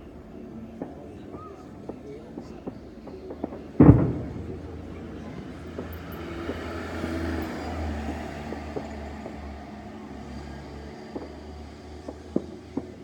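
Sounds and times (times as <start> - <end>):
faint cracks: 0.8 - 7.6
firework bang: 1.9 - 9.0
low rolling rumble: 3.7 - 8.3.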